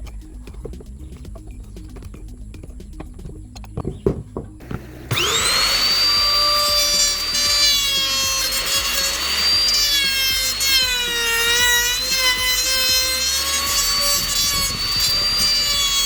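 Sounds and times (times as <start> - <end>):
power tool motor whining: 3.2 - 16.0.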